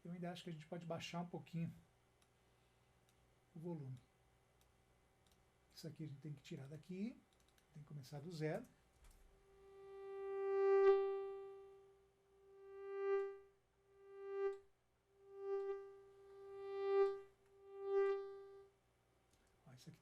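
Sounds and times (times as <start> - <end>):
synthesized mosquito whine: 9.4 - 14.6, 15.2 - 18.7.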